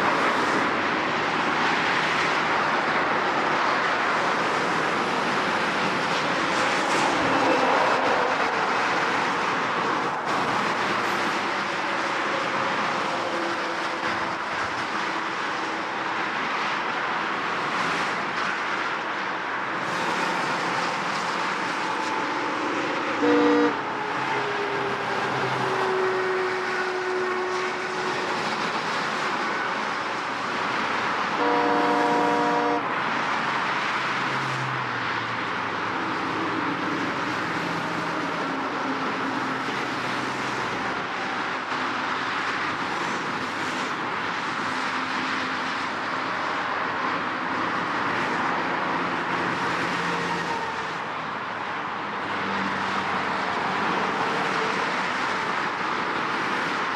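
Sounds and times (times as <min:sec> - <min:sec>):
heavy road traffic: 0:00.0 - 0:56.9
car horn honking: 0:23.2 - 0:23.8, 0:31.4 - 0:32.9.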